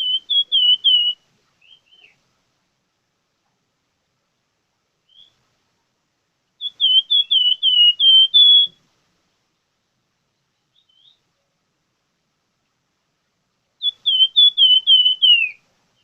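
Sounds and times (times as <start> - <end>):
bird whistled notes: 0.0 - 2.2, 5.1 - 5.4, 6.6 - 8.8, 10.7 - 11.2, 13.8 - 16.0.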